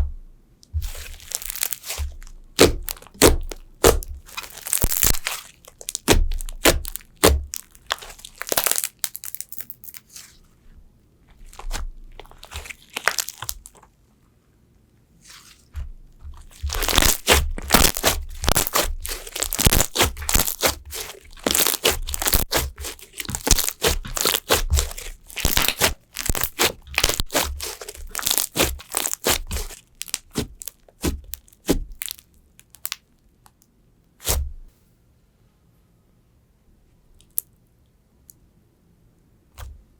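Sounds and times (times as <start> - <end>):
crunchy slime crackling: 0.7 - 10.4, 11.3 - 14.0, 15.2 - 33.6, 34.2 - 34.7, 37.2 - 37.5.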